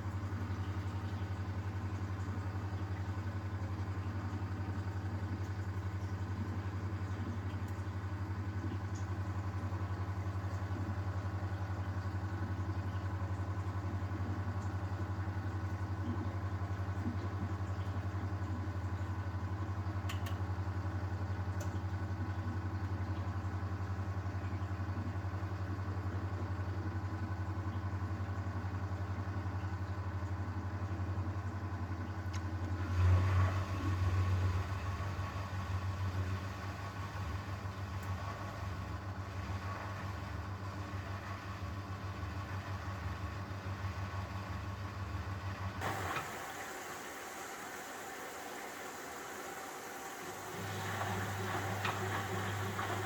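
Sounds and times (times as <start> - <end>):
washing machine humming: 0.0 - 53.0.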